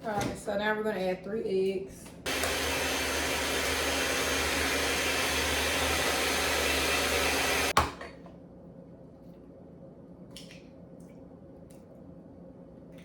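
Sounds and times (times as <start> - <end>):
electric mixer running: 2.3 - 7.8.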